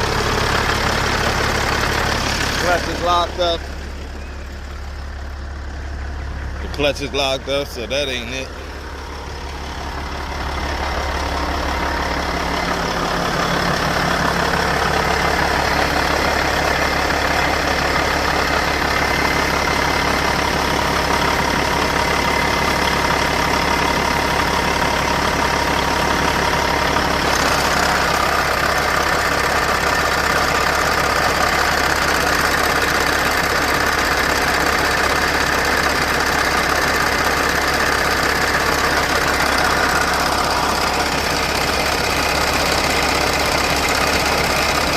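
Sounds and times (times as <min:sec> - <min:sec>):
diesel engine idling: 0:00.0 - 0:44.9.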